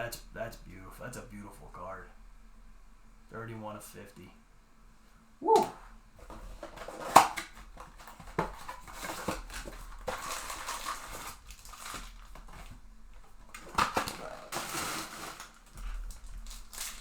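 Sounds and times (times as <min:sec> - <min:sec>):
plastic wrapper crinkling: 0:06.2 - 0:17.0.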